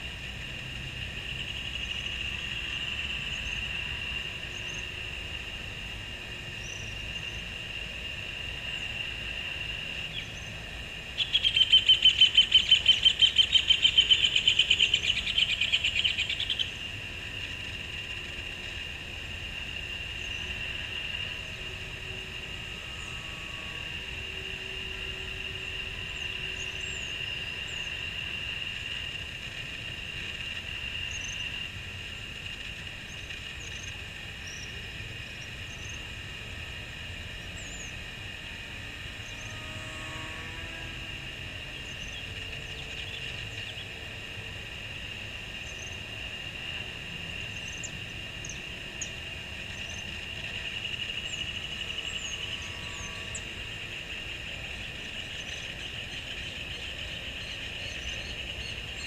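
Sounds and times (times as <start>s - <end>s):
low wind rumble: 0.0s - 59.0s
model plane motor whine: 20.0s - 27.2s, 37.6s - 42.7s.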